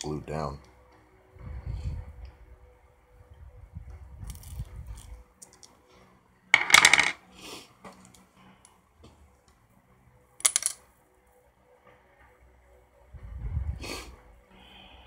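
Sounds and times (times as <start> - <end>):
small objects clattering on hard surface: 6.6 - 7.2.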